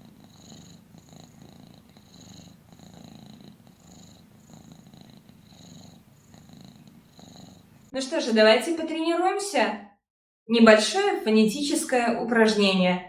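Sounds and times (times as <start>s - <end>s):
cat purring: 0.0s - 7.9s.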